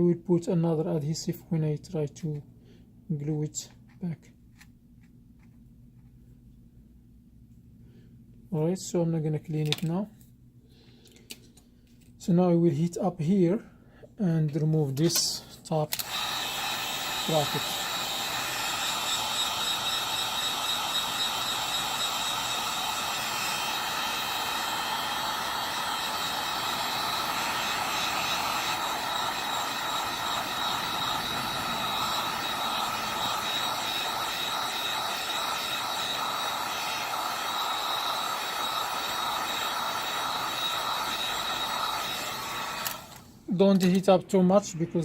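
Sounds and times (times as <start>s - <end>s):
heat gun blowing: 15.0s - 43.5s.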